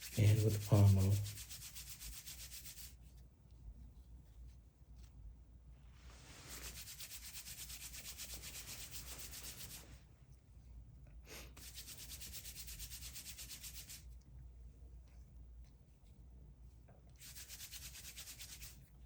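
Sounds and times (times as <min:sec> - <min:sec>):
hair rubbed between palms: 0:00.0 - 0:03.2, 0:06.0 - 0:10.0, 0:11.6 - 0:14.1, 0:17.2 - 0:18.9.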